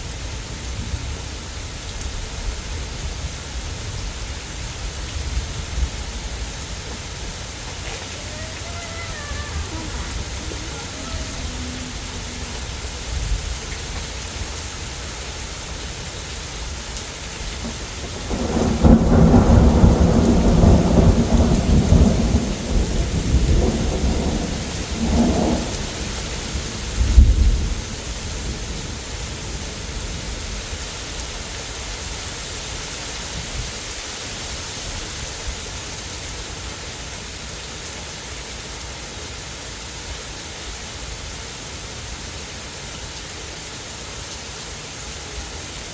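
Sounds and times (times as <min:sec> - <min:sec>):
heavy rain: 0:00.0 - 0:45.9
thunder rumbling: 0:04.8 - 0:15.0, 0:17.4 - 0:29.0.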